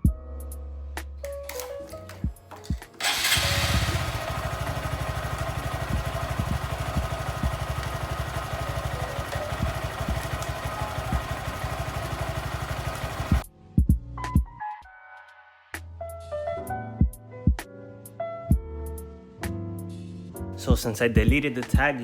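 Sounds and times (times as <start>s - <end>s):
motorcycle engine starting and idling: 2.2s - 13.4s.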